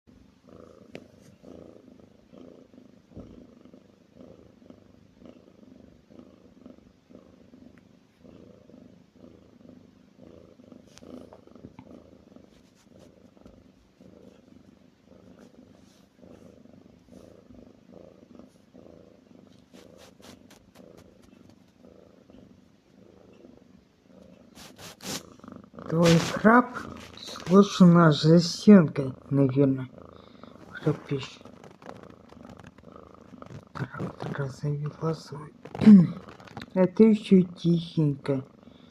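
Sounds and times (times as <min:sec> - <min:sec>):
snoring rattle: 0:13.0 - 0:38.9.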